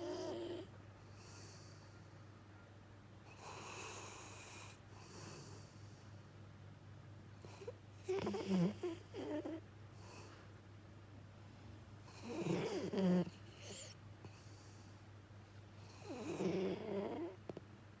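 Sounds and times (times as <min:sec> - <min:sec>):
dog snoring: 0:00.0 - 0:01.9, 0:03.3 - 0:06.0, 0:07.4 - 0:10.4, 0:12.0 - 0:14.6, 0:15.8 - 0:17.5.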